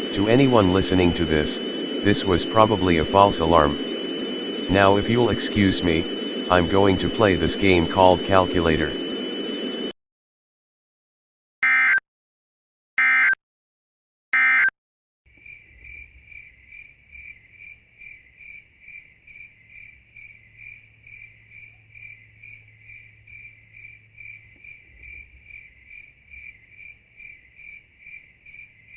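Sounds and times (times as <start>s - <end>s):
crickets chirping: 0.0s - 9.8s, 15.3s - 28.9s
faint low hum: 0.0s - 9.8s, 15.3s - 28.9s
alert data bursts: 0.0s - 9.9s.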